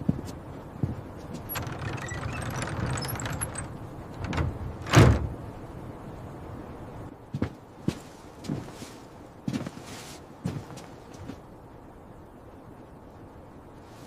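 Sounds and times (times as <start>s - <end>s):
door scraping and clicking: 1.4s - 5.3s.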